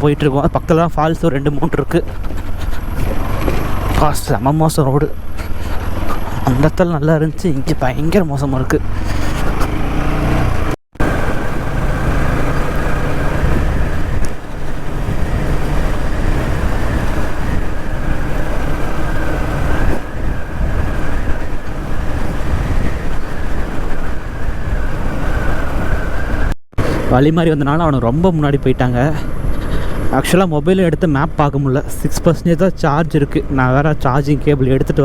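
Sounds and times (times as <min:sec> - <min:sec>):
wind noise: 0:00.0 - 0:34.7
road noise: 0:00.0 - 0:35.0
motorcycle engine: 0:01.8 - 0:06.8, 0:08.4 - 0:27.1.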